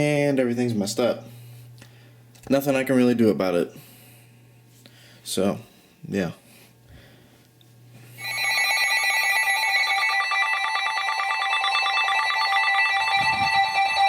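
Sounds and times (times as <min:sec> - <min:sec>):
pulsing electronic alert tones: 0:08.2 - 0:14.0.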